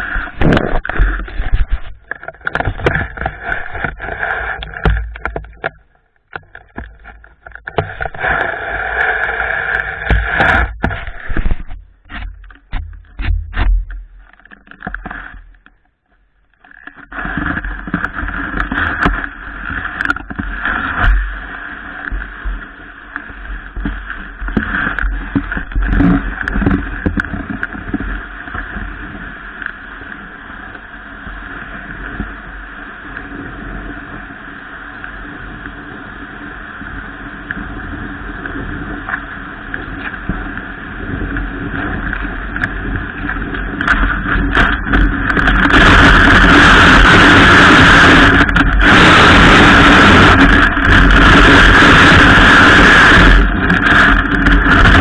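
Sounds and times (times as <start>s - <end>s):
wind buffeting microphone: 0.0s - 4.3s, 40.4s - 55.0s
snowboard sliding over snow: 0.0s - 5.7s, 6.7s - 13.7s, 17.0s - 55.0s.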